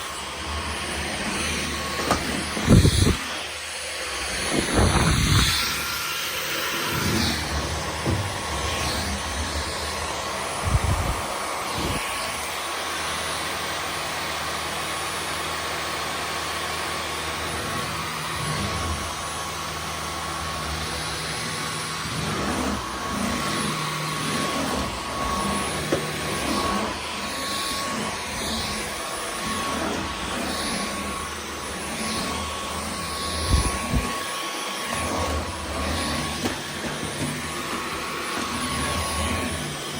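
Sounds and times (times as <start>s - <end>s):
cordless vacuum whining: 0.0s - 39.9s.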